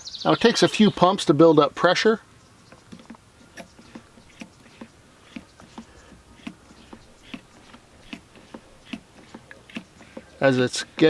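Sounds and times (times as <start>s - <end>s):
hand pump strokes clicking: 2.6s - 11.0s.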